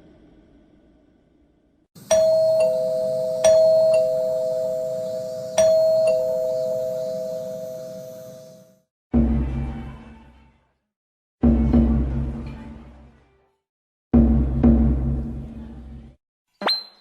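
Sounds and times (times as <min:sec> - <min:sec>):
two-tone doorbell chime: 0:02.0 - 0:08.7.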